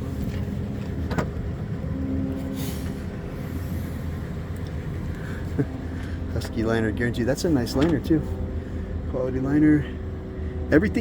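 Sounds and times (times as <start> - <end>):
vehicle engine idling: 0.0 - 11.0.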